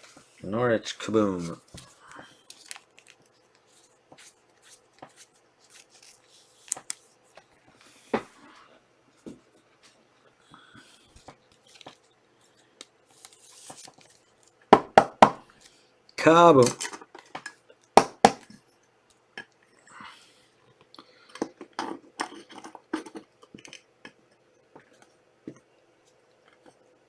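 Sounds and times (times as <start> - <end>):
trading cards rustling and sliding: 2.5 - 7.0.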